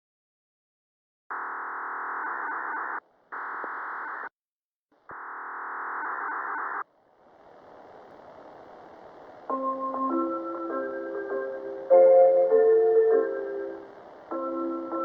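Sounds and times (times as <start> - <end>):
buzzy radio tone bursts: 1.3 - 4.3, 5.1 - 9.6
open radio channel hiss: 1.3 - 4.3, 5.0 - 15.0.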